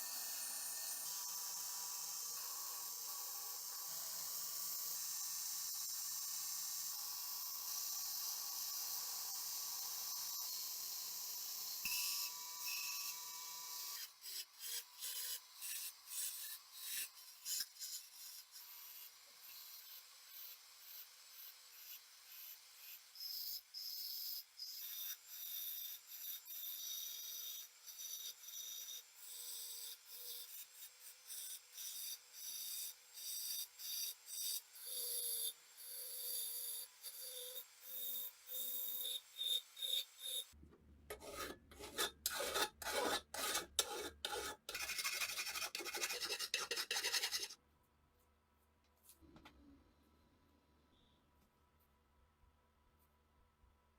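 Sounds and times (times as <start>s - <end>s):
hand file rasping on metal: 13.8s - 22.6s, 38.5s - 47.6s.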